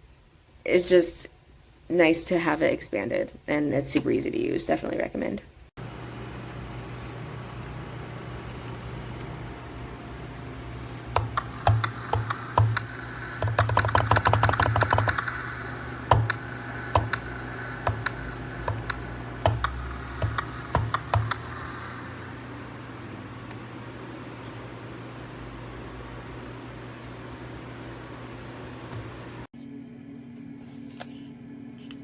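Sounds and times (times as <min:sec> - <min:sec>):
steady low hum: 0:05.8 - 0:32.0
typing on computer keyboard: 0:11.2 - 0:15.4, 0:16.1 - 0:17.3, 0:17.9 - 0:21.5.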